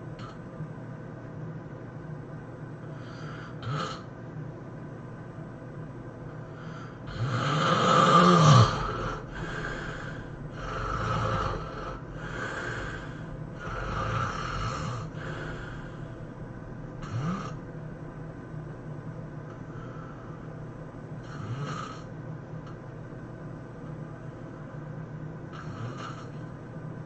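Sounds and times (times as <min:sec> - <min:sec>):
person snoring: 0:03.0 - 0:04.1, 0:06.6 - 0:16.1, 0:17.0 - 0:17.6, 0:21.2 - 0:22.1, 0:25.6 - 0:26.4.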